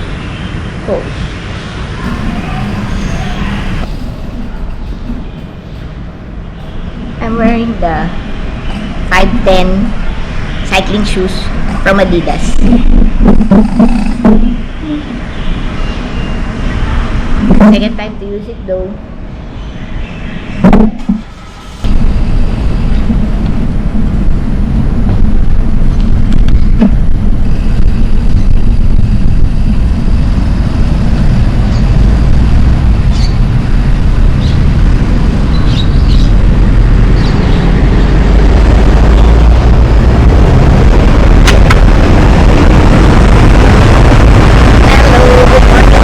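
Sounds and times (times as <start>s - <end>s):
wind buffeting microphone: 1.8s - 46.0s.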